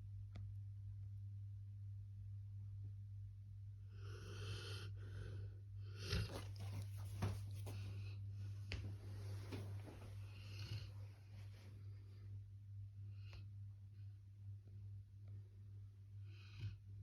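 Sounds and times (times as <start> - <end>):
dog snoring: 3.9 - 7.1, 10.2 - 11.2.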